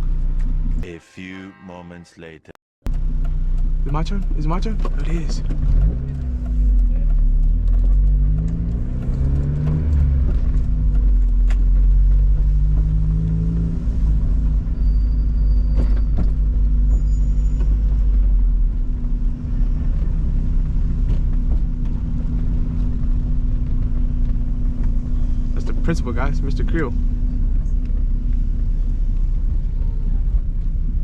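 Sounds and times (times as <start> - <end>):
car engine running: 2.9 - 15.1, 17.8 - 31.0
brief high squeak: 14.8 - 16.2, 16.8 - 17.8.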